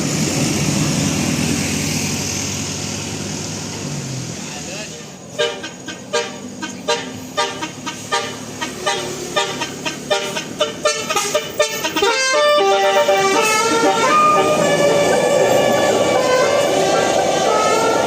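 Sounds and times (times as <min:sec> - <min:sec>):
multi-tone bus horn playing a tune: 0:05.3 - 0:18.0.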